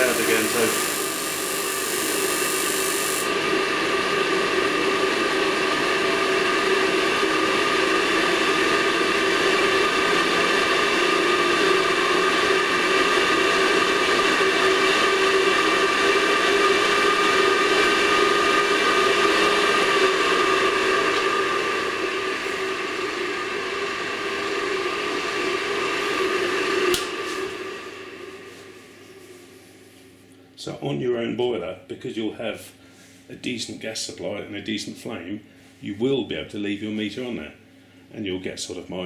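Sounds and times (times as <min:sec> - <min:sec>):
gas torch flame hissing: 0:00.0 - 0:03.3.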